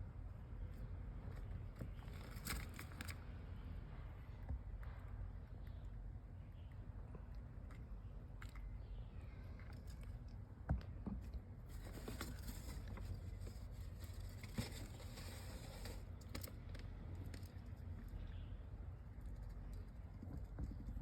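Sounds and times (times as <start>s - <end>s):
hamster rustling and scratching: 0.6s - 3.2s, 11.0s - 16.4s.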